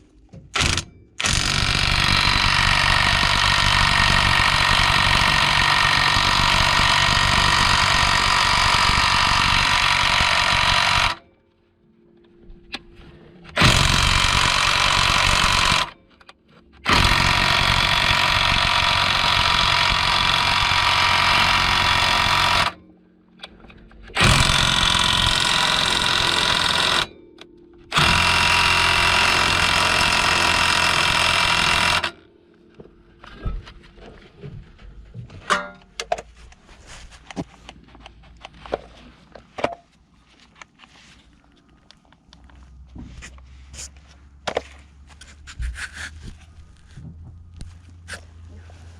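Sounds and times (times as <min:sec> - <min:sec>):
impact wrench hammering: 0:00.4 - 0:11.2, 0:13.5 - 0:16.0, 0:16.8 - 0:22.8, 0:24.1 - 0:32.2, 0:35.5 - 0:36.0.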